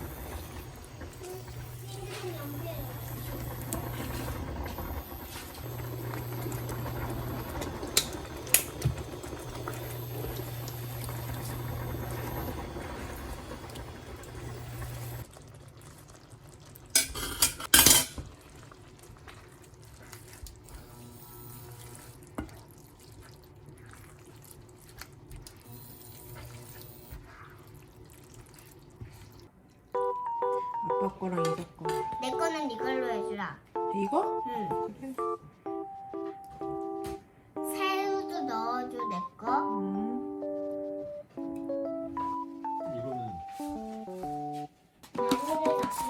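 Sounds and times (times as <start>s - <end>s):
utensils clinking against pots: 17.0s - 18.2s.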